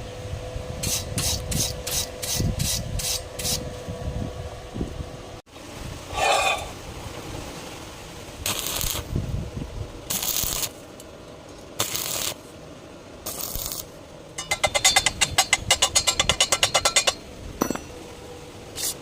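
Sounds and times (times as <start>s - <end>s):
hissy scraping strokes: 0.8s - 3.8s, 6.1s - 6.8s, 13.2s - 17.2s, 18.7s - 19.0s.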